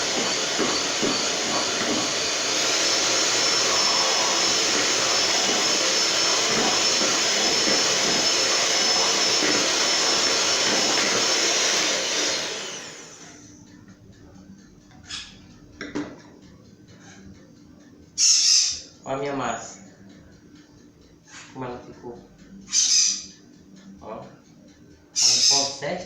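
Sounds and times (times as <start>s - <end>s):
electric mixer whining: 0.0s - 13.4s.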